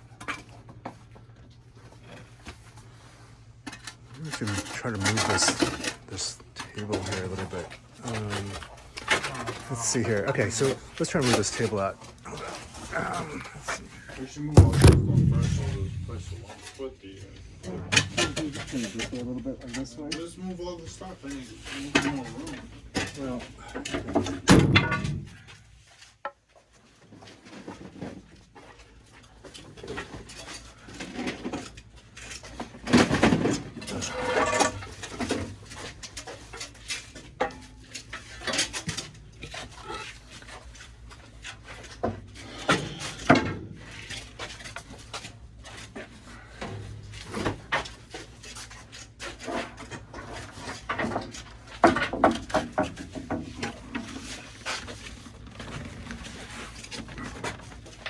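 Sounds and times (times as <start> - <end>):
household items knocking and clattering: 12.6 - 16.7, 24.0 - 25.6
loud bangs: 14.6 - 16.6.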